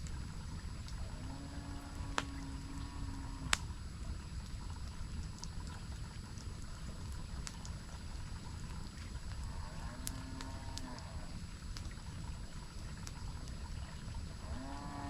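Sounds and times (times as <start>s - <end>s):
campfire popping: 0.0s - 1.2s, 1.8s - 14.5s
cow mooing: 1.2s - 3.6s, 9.5s - 11.2s, 14.4s - 15.0s.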